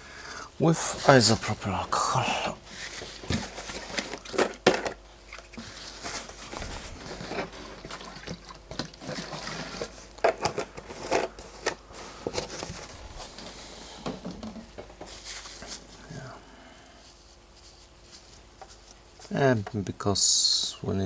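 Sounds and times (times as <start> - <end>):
rubbing and scratching on screen: 5.3 - 13.7.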